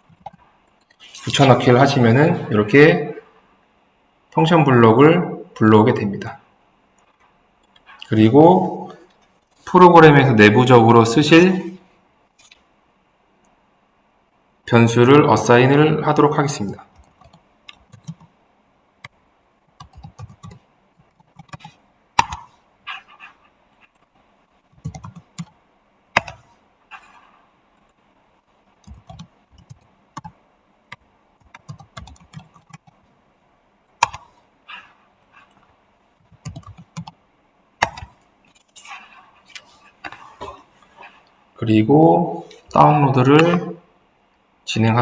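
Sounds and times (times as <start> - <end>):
sharp keyboard clicks: 17.0 - 18.3, 19.8 - 22.5, 24.8 - 25.6, 26.2 - 26.5, 28.8 - 33.0, 34.0 - 34.3, 36.2 - 37.2, 37.8 - 38.6
typing on computer keyboard: 17.0 - 18.3, 19.8 - 22.5, 24.8 - 25.6, 26.2 - 26.4, 28.8 - 33.0, 34.0 - 34.3, 36.3 - 37.2, 37.8 - 38.2.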